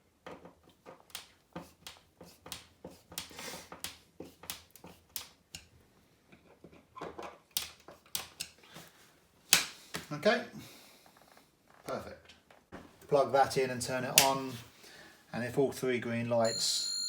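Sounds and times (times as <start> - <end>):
light clicks and taps of hand tools: 0.9 - 5.7, 7.5 - 8.6.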